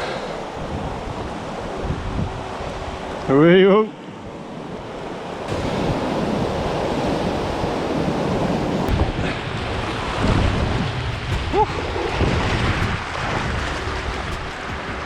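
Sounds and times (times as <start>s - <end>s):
wind buffeting microphone: 0.0s - 3.2s, 4.2s - 15.0s
floodwater rushing: 4.3s - 15.0s.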